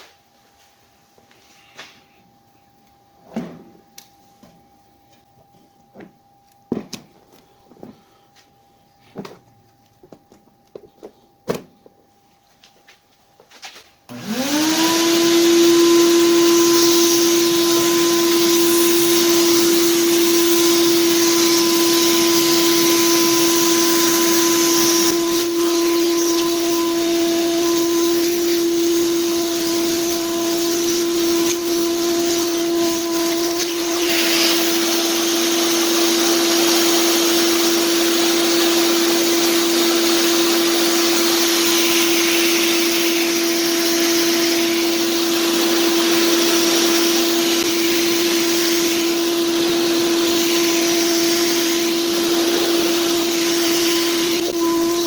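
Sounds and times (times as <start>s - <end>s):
electric motor whining: 14.1s - 55.0s.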